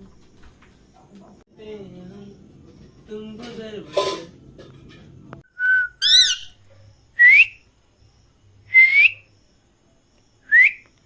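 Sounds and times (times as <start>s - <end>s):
parrot whistling: 5.6s - 6.6s.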